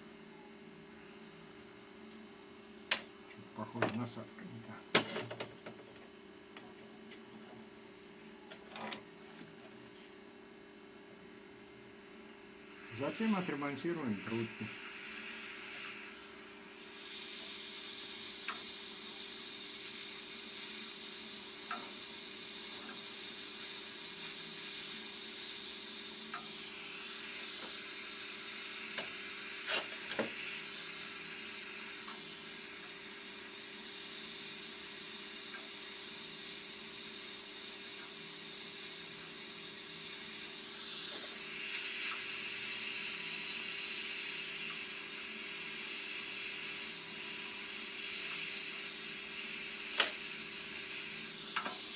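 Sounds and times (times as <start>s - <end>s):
gas torch hissing: 12.6s - 51.9s.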